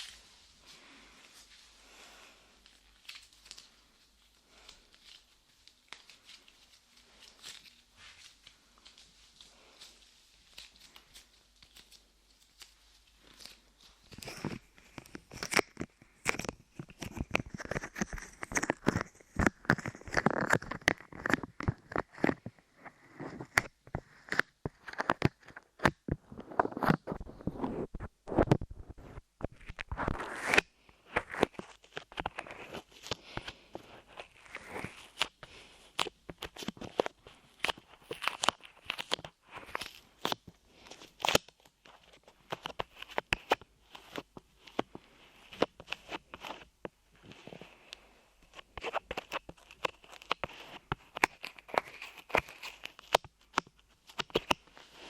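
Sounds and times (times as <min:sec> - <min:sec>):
rubbing on microphone: 0:13.2 - 0:55.0.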